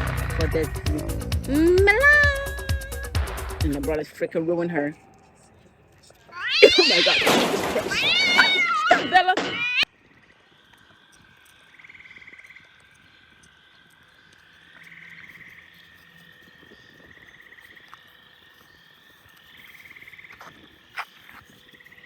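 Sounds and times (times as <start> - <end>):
frog chorus: 8.0 - 22.0.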